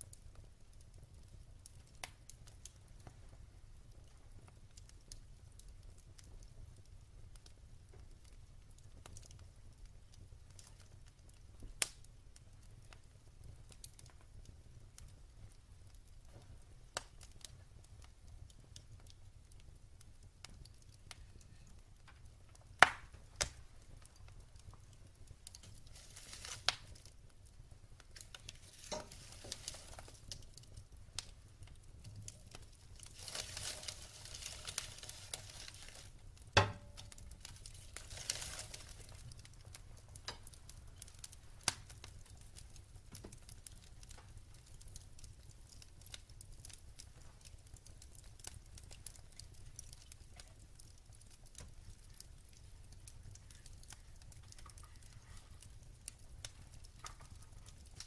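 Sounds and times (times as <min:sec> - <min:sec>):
fire snapping: 0:00.0 - 0:58.0
wood fire crackling and popping: 0:00.0 - 0:58.0
fire hissing: 0:20.6 - 0:43.0.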